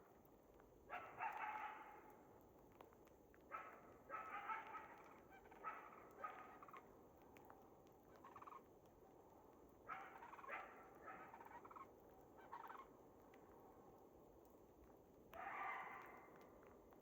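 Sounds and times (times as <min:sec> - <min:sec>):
faint rattling animal calls: 0:04.2 - 0:06.9, 0:08.1 - 0:08.7, 0:10.0 - 0:12.9.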